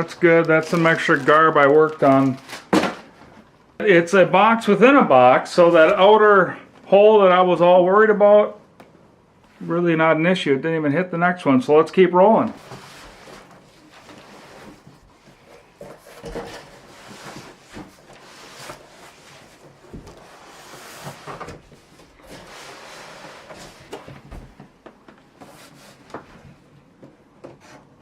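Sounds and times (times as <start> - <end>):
cardboard sliding and scraping: 12.6 - 24.5.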